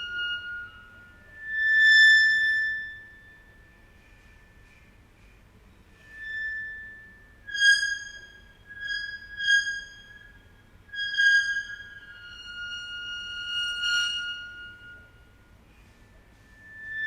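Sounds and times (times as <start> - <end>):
metal screeching on ceramic tile: 6.0 - 15.1.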